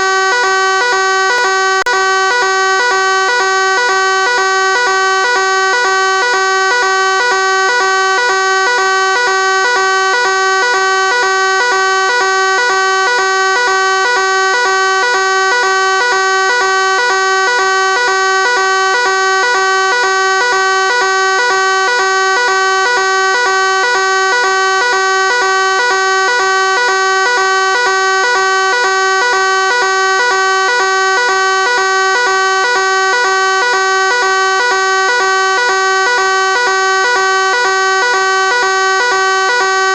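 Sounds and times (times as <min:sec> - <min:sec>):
fire alarm tone: 0:00.0 - 0:39.9.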